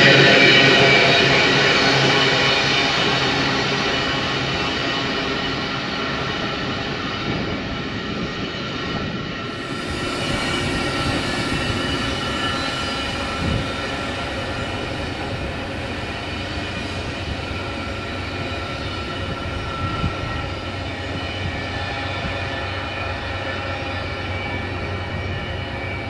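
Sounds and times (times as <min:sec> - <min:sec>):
train wheels rumbling on rails: 0:00.0 - 0:26.0
wheels squealing on rail: 0:09.5 - 0:26.0.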